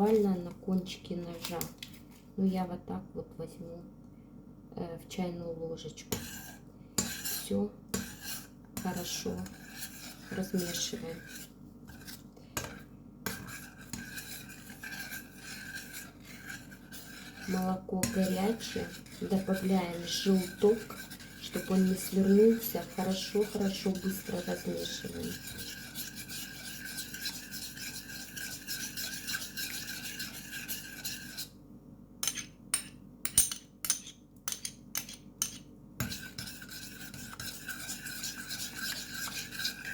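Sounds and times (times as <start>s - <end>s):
teaspoon stirring in a pan: 6.1s - 31.6s, 32.2s - 39.9s
utensil clinking on pot: 32.2s - 36.2s.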